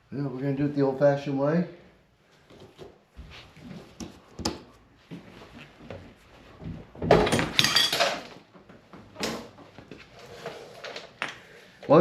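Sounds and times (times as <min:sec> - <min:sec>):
metal tools clanking: 0:07.2 - 0:08.4.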